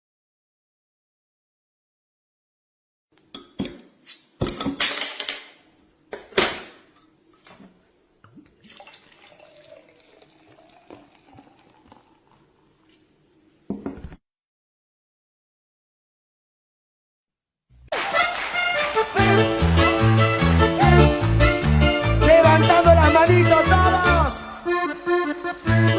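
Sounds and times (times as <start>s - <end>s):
glassware clinking: 4.4s - 6.8s
liquid pouring: 8.2s - 13.0s.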